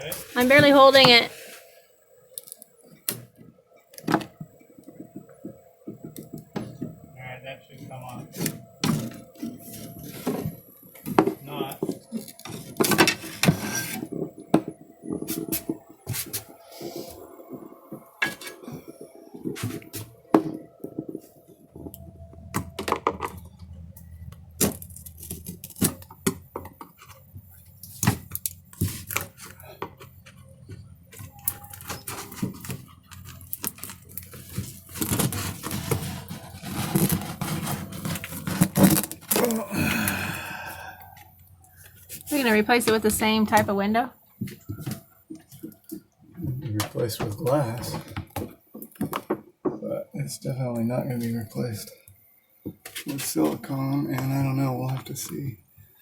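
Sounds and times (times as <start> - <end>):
hand tools clinking and scraping: 7.8 - 14.4, 18.2 - 20.2, 28.8 - 39.6.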